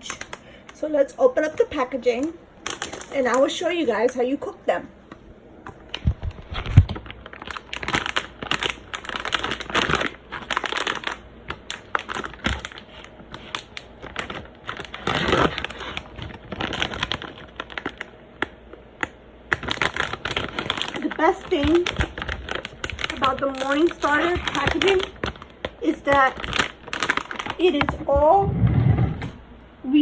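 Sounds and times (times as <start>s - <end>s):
packaging crinkling and rustling: 0.0s - 4.2s, 5.1s - 29.4s.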